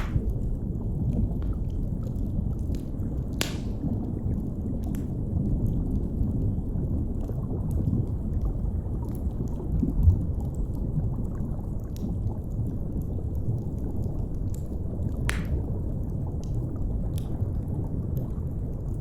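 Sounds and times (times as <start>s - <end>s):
wood fire crackling: 0.0s - 6.5s, 13.5s - 17.4s
low underwater rumble: 0.0s - 19.0s.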